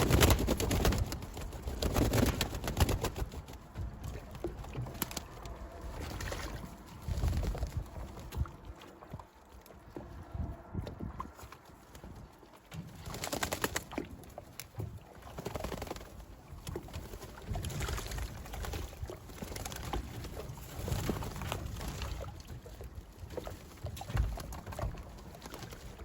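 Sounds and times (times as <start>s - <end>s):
wings flapping: 0.0s - 8.6s, 12.8s - 22.3s, 24.0s - 26.0s
splashing in water: 12.7s - 26.0s.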